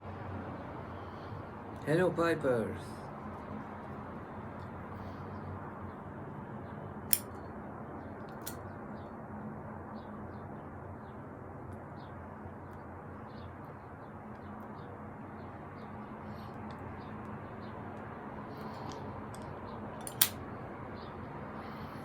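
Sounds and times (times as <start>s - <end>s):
faint hum: 0.0s - 22.0s
sharp click: 7.1s - 7.4s, 18.7s - 20.4s.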